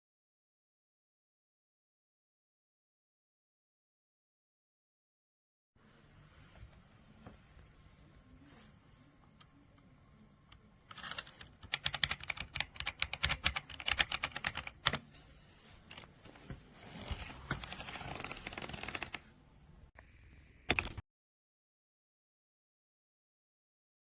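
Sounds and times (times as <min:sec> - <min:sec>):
mechanical keyboard typing: 0:10.9 - 0:15.0, 0:17.6 - 0:19.3, 0:20.7 - 0:21.0.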